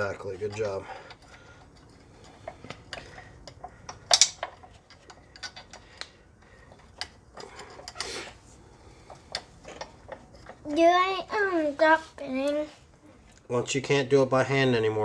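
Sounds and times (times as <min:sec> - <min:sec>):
metallic clicks of bolts handled: 0:00.4 - 0:08.1.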